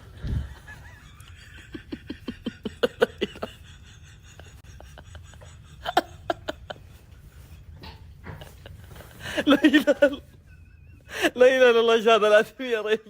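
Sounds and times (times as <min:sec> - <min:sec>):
person laughing: 0:00.1 - 0:11.4.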